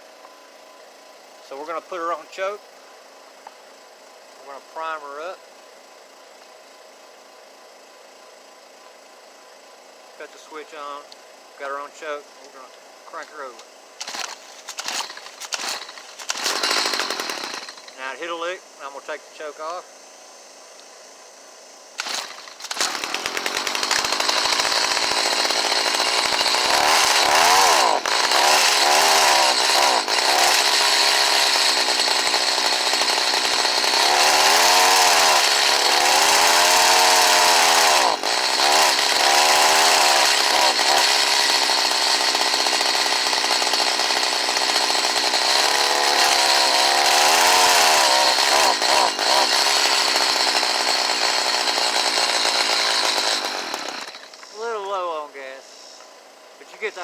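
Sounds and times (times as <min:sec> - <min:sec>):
hedge trimmer engine revving: 0:01.5 - 0:02.6, 0:04.4 - 0:05.4, 0:10.2 - 0:19.8, 0:21.9 - 0:55.6, 0:56.2 - 0:57.0.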